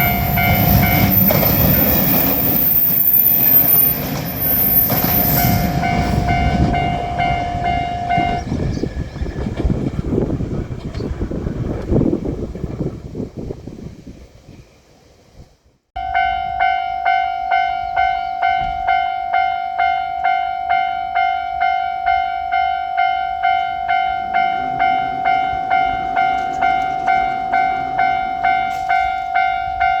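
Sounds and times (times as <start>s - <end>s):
level-crossing electronic bell: 0.0s - 8.4s, 16.0s - 30.0s.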